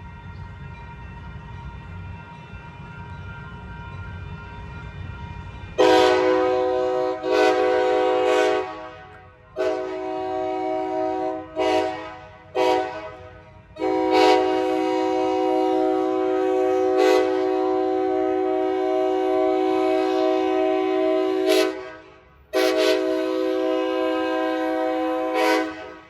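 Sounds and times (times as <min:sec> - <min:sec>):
locomotive air horn blasts: 0:05.8 - 0:26.0.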